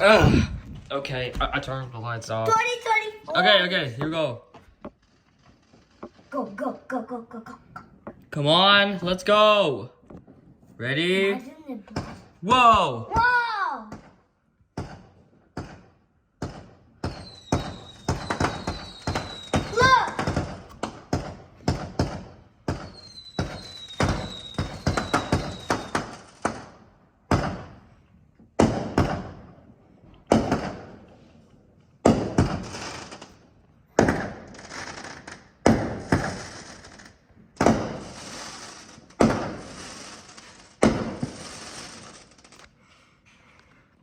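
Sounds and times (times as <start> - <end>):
fireworks bangs: 0.0 - 10.7, 11.9 - 42.7
firework crackling: 1.6 - 7.6, 16.5 - 27.8, 32.0 - 42.8
whistles falling in pitch: 17.2 - 19.8, 22.9 - 25.9.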